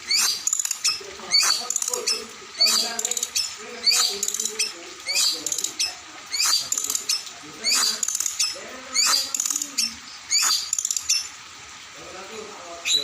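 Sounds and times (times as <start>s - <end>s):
songbird singing: 0.0s - 11.4s, 12.8s - 13.0s
fast rattle of clicks: 0.2s - 2.0s, 4.0s - 4.6s, 7.8s - 9.8s, 10.4s - 11.3s.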